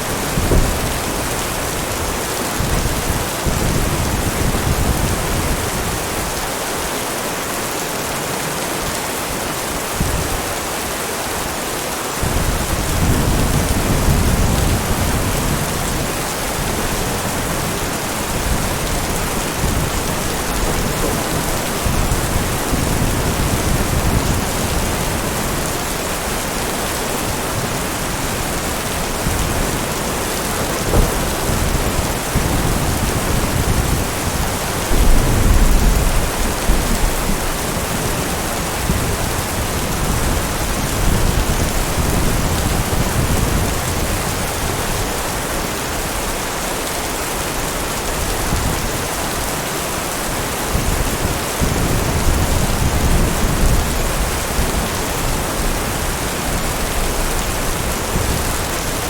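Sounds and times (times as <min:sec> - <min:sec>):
heavy rain falling: 0:00.0 - 0:59.0
thunder rumbling: 0:00.1 - 0:06.0, 0:12.2 - 0:45.1.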